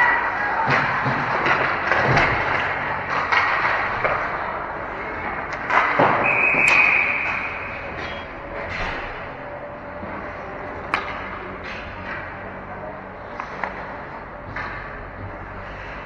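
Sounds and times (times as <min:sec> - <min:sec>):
hockey sticks and puck knocking: 0:00.0 - 0:09.2, 0:10.0 - 0:16.0
referee whistle: 0:06.2 - 0:07.8.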